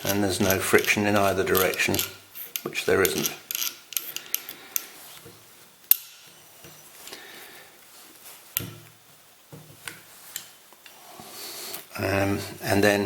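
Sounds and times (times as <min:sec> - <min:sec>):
metal parts clicking and knocking: 0:00.0 - 0:04.9.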